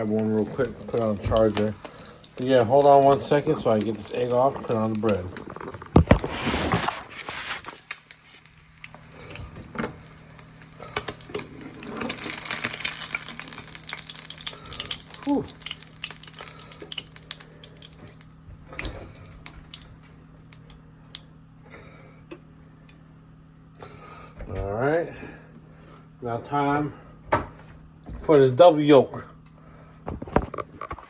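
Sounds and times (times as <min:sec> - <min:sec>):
eggs sizzling in a frying pan: 0:00.0 - 0:20.6.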